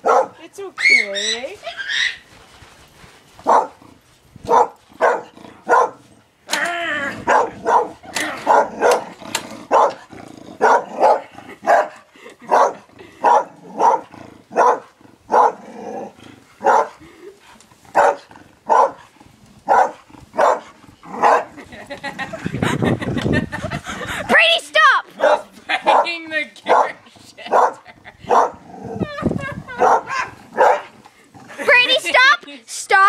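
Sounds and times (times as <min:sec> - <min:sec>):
dog barking: 0:00.0 - 0:00.4, 0:03.4 - 0:03.8, 0:04.5 - 0:06.0, 0:07.3 - 0:09.1, 0:09.7 - 0:10.0, 0:10.6 - 0:15.6, 0:16.6 - 0:17.0, 0:18.0 - 0:19.0, 0:19.7 - 0:21.5, 0:25.2 - 0:26.1, 0:26.7 - 0:28.6, 0:29.8 - 0:30.9.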